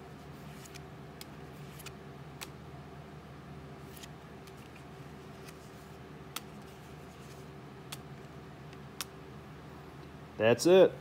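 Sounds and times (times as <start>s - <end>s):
cards ticking: 0.4s - 2.6s, 3.8s - 9.2s.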